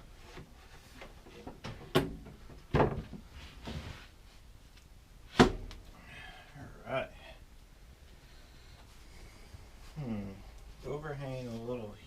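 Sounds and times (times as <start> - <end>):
wooden board knocks and thuds: 1.5 - 3.2.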